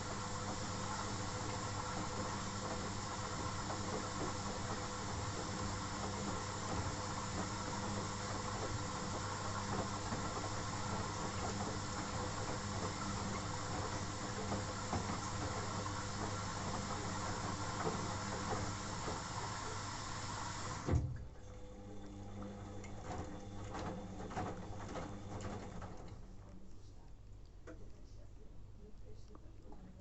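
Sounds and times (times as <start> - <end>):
washing machine knock: 0.0 - 21.3
washing machine hiss and hum: 0.0 - 26.6.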